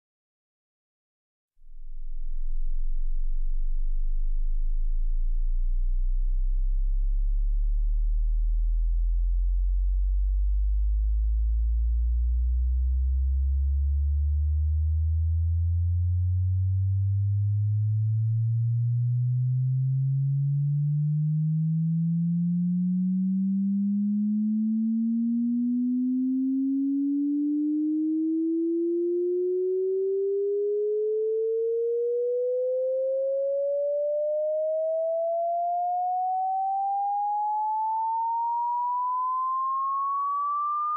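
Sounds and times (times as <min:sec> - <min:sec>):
sine tone sweeping upward: 0:17.4 - 0:40.9.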